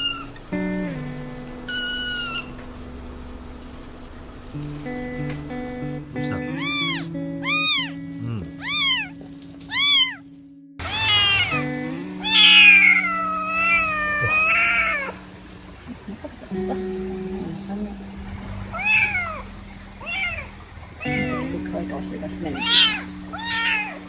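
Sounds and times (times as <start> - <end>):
kitten meowing: 0.0 - 0.4, 1.7 - 2.5, 6.3 - 10.2, 10.8 - 15.4, 18.7 - 21.5, 22.6 - 24.0
background music with held notes: 0.0 - 18.5, 21.0 - 24.0.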